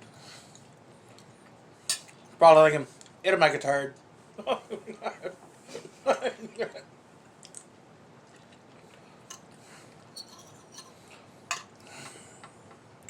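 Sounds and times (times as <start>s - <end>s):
quiet chewing: 7.4s - 10.0s
cutlery clicking on dishes: 10.2s - 12.2s.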